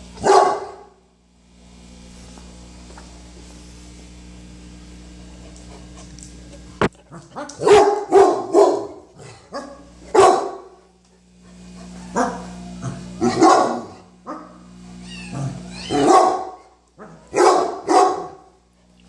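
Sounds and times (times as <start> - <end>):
dog barking: 0.2 - 0.9, 7.4 - 10.7, 12.0 - 12.6, 13.2 - 14.6, 15.9 - 18.5.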